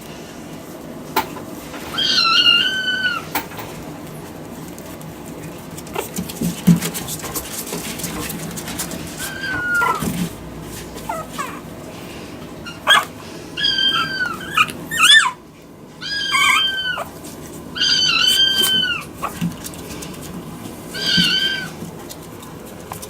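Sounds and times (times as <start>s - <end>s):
puppy whimpering: 1.9s - 3.4s, 8.8s - 11.7s, 12.6s - 15.4s, 16.0s - 19.4s, 20.9s - 21.8s.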